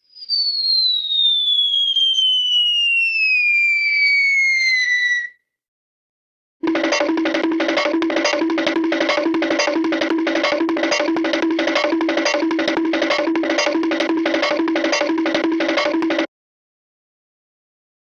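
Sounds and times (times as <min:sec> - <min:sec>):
music riff over clicking beat: 0:06.6 - 0:16.3.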